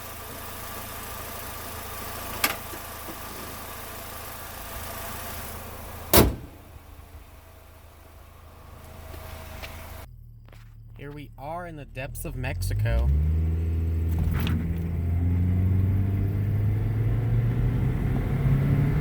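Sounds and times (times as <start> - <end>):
car engine idling: 0.0 - 17.8
loud slam: 6.1 - 6.8.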